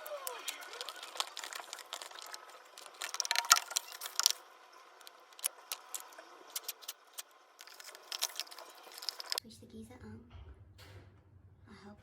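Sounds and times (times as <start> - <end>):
metal tools clinking and rattling: 0.4 - 4.4.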